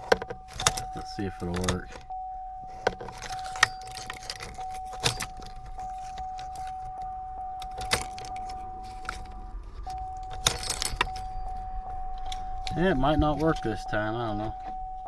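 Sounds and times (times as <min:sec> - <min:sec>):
keys clicking and jangling: 0:00.0 - 0:02.1, 0:02.7 - 0:12.8
steady electronic tone: 0:05.7 - 0:15.0.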